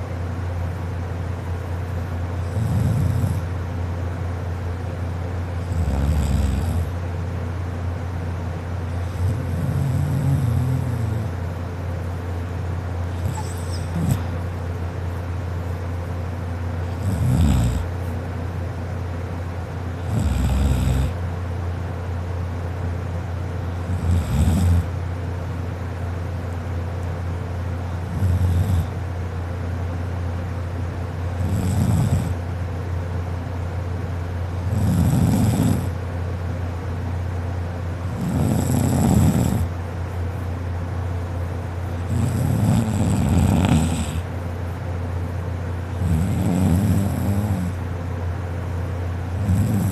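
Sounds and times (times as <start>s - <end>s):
steady low hum: 0.0s - 49.9s
woman snoring: 2.4s - 3.5s, 5.7s - 7.0s, 9.0s - 11.4s, 13.2s - 14.3s, 17.0s - 17.9s, 20.0s - 21.2s, 23.8s - 24.9s, 28.0s - 29.0s, 31.4s - 32.4s, 34.6s - 36.0s, 38.1s - 39.7s, 42.0s - 44.3s, 46.0s - 47.8s, 49.4s - 49.9s.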